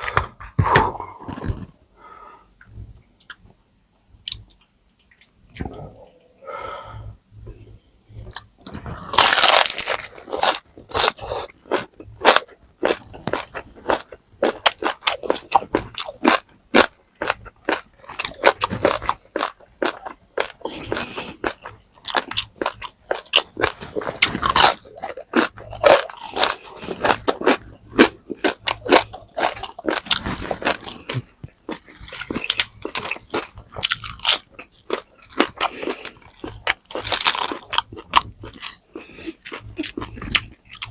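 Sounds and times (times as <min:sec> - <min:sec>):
crunchy chewing: 0:08.2 - 0:40.9.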